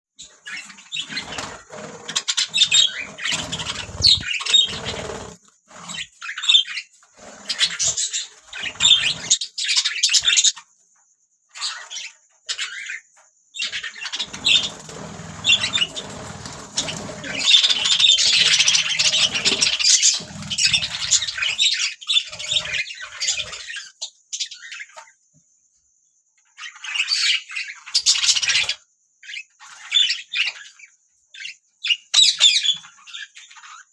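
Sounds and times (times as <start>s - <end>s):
budgerigars chirping and chattering: 0.2s - 10.7s, 11.5s - 25.0s, 26.6s - 33.9s.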